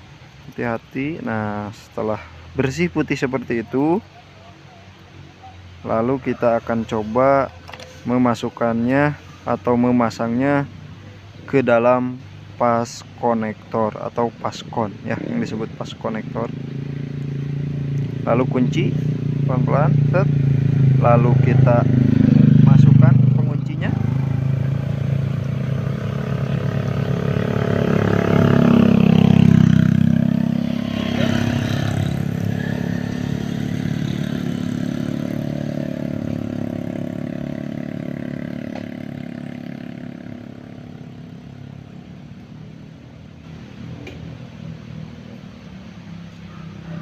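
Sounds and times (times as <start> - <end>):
vehicle engine passing by: 13.9 - 47.0.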